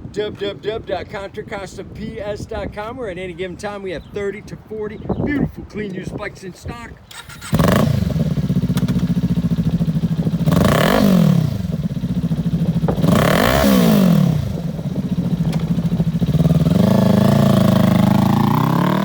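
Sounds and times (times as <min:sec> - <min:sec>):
motorcycle engine idling and revving: 0:07.1 - 0:19.0.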